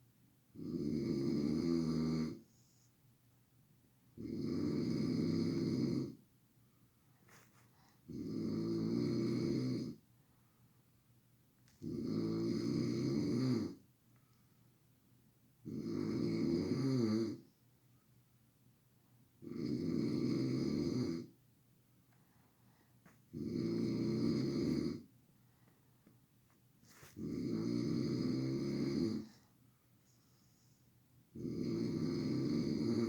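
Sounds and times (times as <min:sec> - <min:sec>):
man snoring loudly: 0:00.6 - 0:02.4, 0:04.2 - 0:06.2, 0:08.1 - 0:10.0, 0:11.8 - 0:13.8, 0:15.7 - 0:17.4, 0:19.4 - 0:21.3, 0:23.3 - 0:25.0, 0:27.2 - 0:29.3, 0:31.4 - 0:33.0
quiet breathing: 0:02.2 - 0:03.2, 0:06.1 - 0:08.2, 0:09.8 - 0:11.0, 0:14.1 - 0:14.8, 0:22.0 - 0:23.3, 0:24.6 - 0:33.0.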